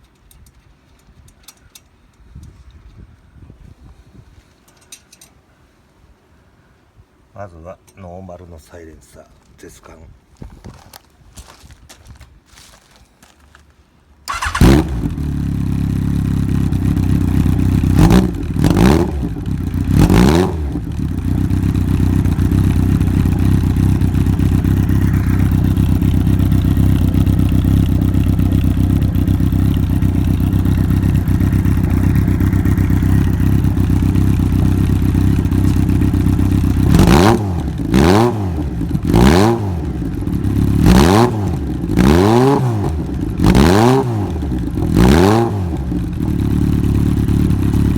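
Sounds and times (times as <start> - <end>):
motorcycle engine idling and revving: 14.3 - 47.9.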